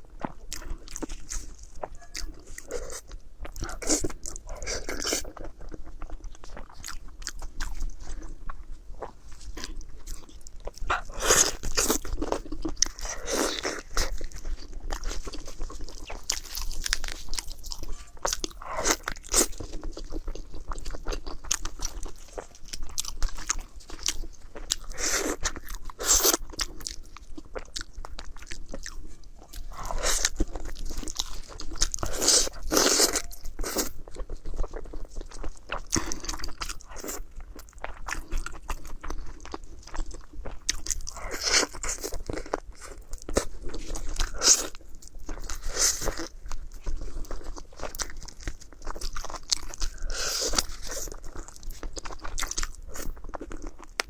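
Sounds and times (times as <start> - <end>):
crunchy chewing: 0.1 - 54.0.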